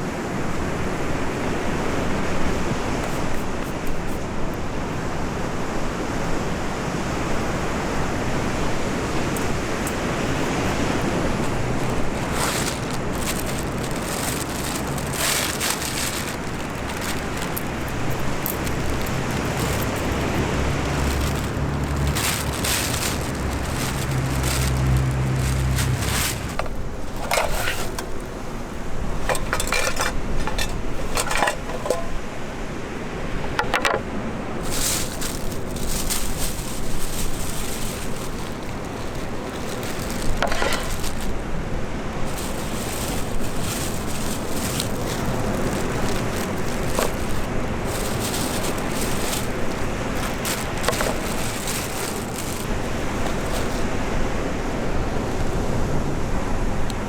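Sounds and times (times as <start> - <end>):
wind: 0.0 - 57.0
cooking gear clinking: 9.3 - 32.2, 34.6 - 41.5, 42.3 - 54.0.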